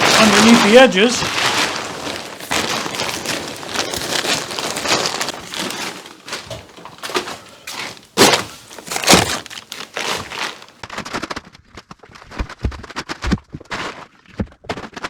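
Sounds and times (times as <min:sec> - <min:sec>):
plastic tarp crinkling: 0:00.0 - 0:10.8
tarp swishes: 0:00.0 - 0:10.8.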